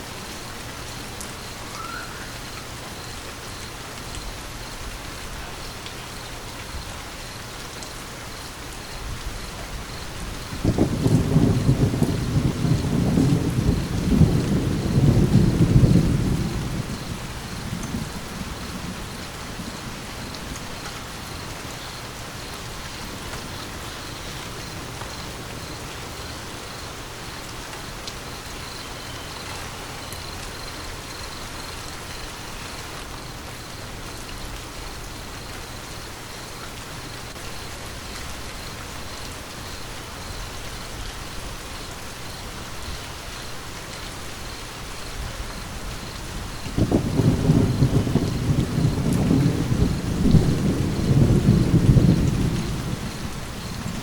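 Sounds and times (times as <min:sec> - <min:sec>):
steady rain: 0:00.0 - 0:54.0
thunder clap and rumble: 0:10.0 - 0:21.8, 0:45.3 - 0:54.0.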